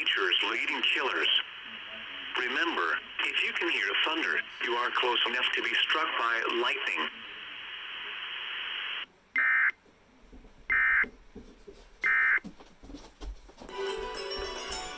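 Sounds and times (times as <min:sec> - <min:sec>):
radio hiss: 0:00.0 - 0:09.1.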